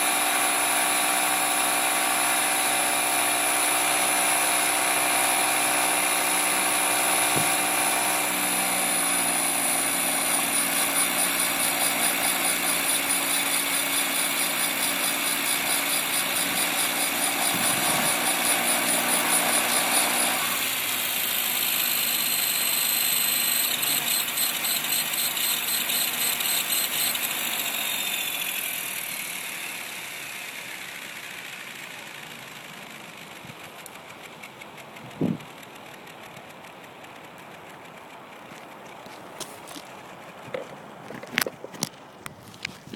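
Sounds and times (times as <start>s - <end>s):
rc helicopter motor whine: 0.0s - 42.8s
rattling vibration: 1.9s - 21.3s.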